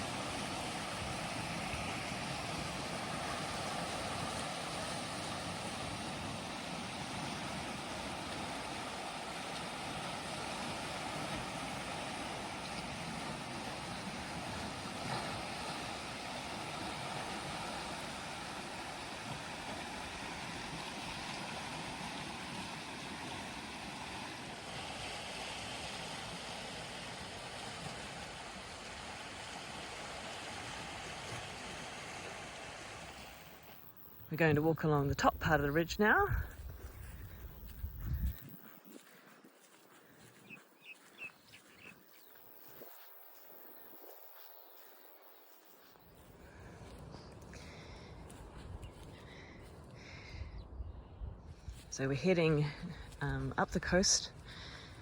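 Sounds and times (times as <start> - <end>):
ocean surf: 0.0 - 36.5
wind rumbling on microphone: 27.8 - 45.5, 46.1 - 55.0.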